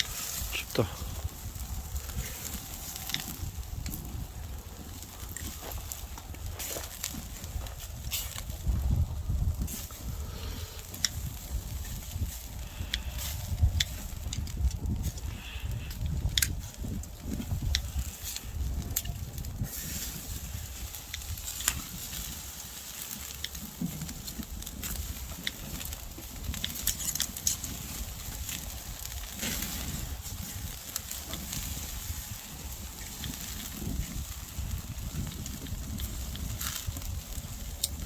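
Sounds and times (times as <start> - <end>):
meat sizzling on grill: 0.0 - 38.0
steady low rumble: 0.0 - 38.0
wood fire crackling and popping: 0.0 - 38.0.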